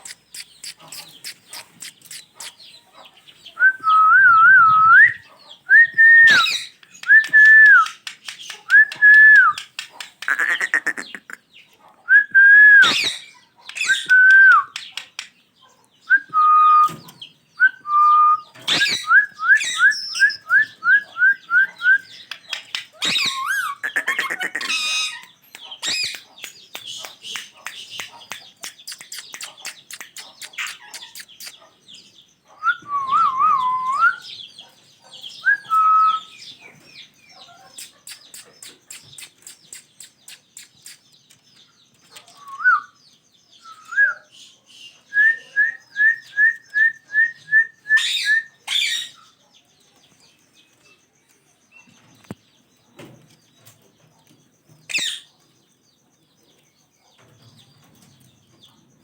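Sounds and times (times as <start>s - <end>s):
parrots chattering chirps: 0.0s - 3.6s, 5.2s - 11.9s, 12.8s - 16.3s, 18.5s - 32.8s, 33.6s - 43.0s, 43.6s - 49.4s, 53.6s - 55.4s
parrot whistled calls: 3.6s - 8.0s, 12.1s - 14.8s, 17.6s - 22.2s, 23.0s - 26.2s, 32.6s - 34.3s, 45.1s - 49.3s
parrot harsh screeches: 23.0s - 26.1s.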